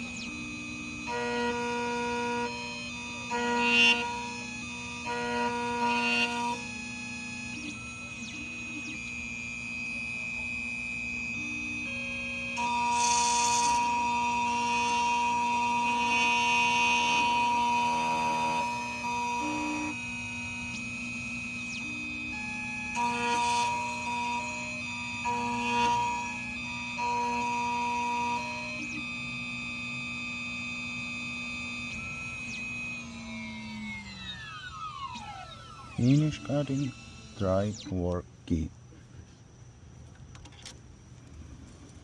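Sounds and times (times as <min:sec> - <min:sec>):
key-cutting machine whining: 0:00.0 - 0:38.7
harsh hissing of key cutting: 0:35.9 - 0:38.2.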